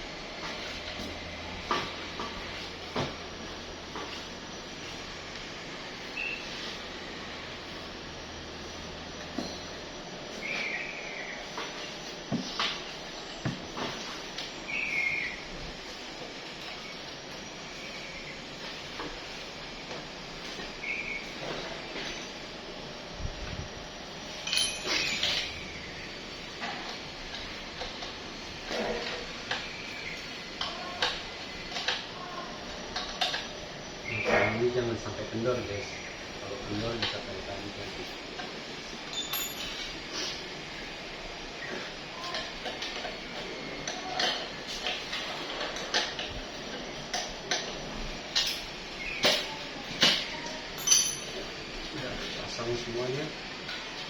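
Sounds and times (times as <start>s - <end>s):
steady background hiss: 0.0s - 54.0s
metal tools clinking: 24.4s - 25.7s, 39.1s - 40.3s, 50.8s - 51.5s.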